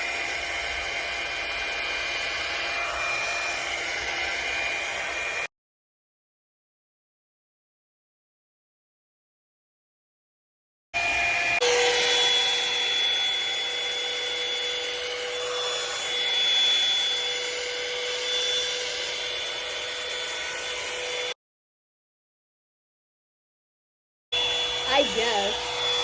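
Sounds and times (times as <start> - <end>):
hair dryer brush running: 0.0 - 5.5, 11.0 - 21.4, 24.4 - 26.0.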